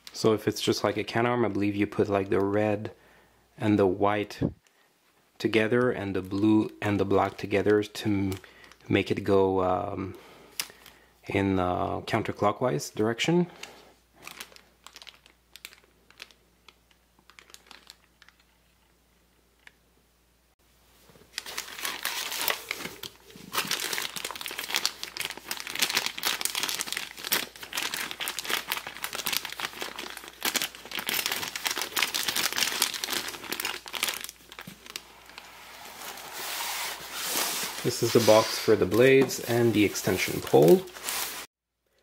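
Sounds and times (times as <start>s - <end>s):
packing material crinkling: 13.6s - 18.9s, 21.0s - 41.5s.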